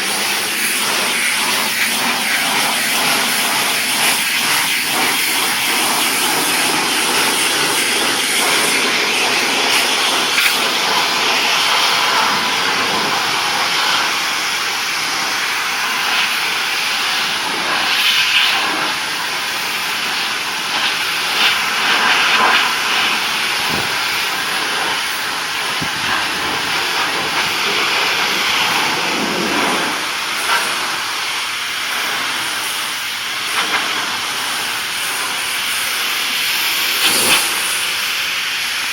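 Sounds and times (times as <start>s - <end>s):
pressure washer spraying wood: 0.0s - 38.9s.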